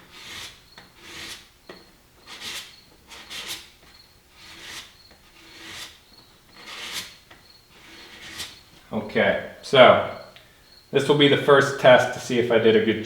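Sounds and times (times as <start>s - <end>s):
blade rasping across cardboard: 0.0s - 8.8s.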